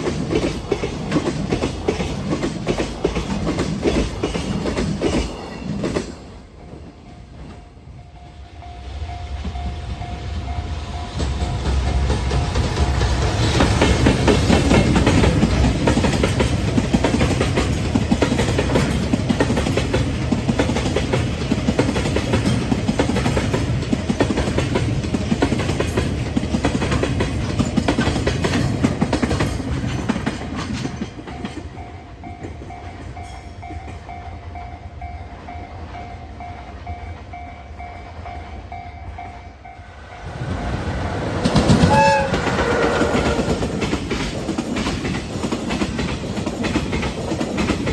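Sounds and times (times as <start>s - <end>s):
train clickety-clack over rail joints: 0.0s - 47.9s
level-crossing warning bell: 6.4s - 15.8s, 30.8s - 41.0s.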